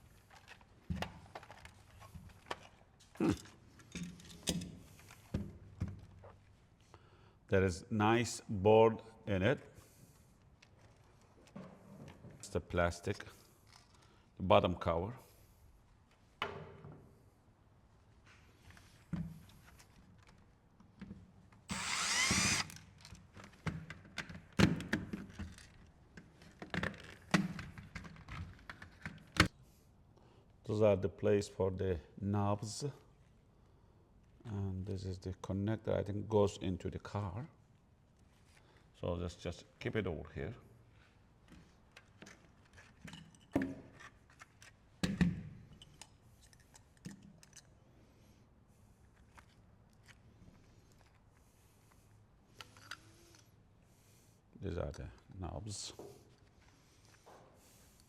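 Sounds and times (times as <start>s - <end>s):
light clicks and taps of parts: 41.0s - 47.8s.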